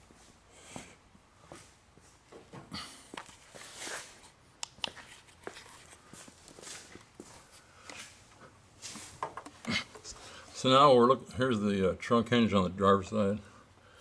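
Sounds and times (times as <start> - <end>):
faint footsteps: 0.0 - 4.2, 4.9 - 10.4
clicks taps and rustles of handling: 4.6 - 10.1.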